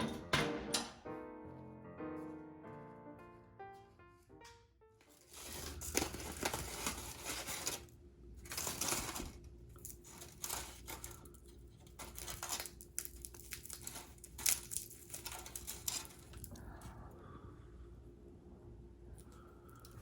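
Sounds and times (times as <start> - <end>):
faint steady hum: 1.2 - 20.0
crinkling and tearing by hand: 5.0 - 16.9.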